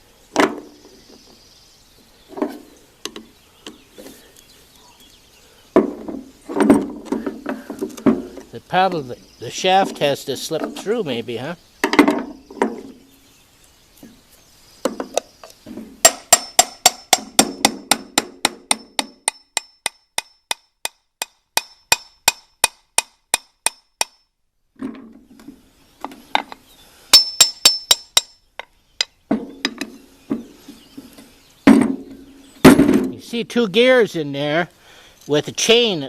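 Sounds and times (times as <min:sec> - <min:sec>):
hammer striking metal: 0:16.0 - 0:24.2, 0:27.2 - 0:28.4.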